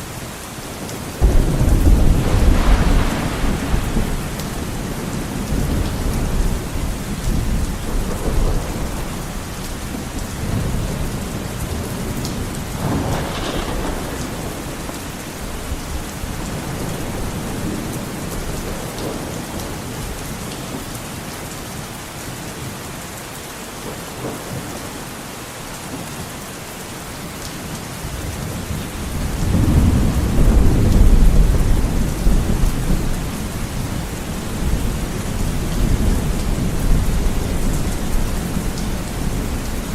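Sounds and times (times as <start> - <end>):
heavy rain on window glass: 0.0 - 39.9
wind: 0.0 - 39.9
thunder rumbling: 1.2 - 20.2, 28.3 - 39.9.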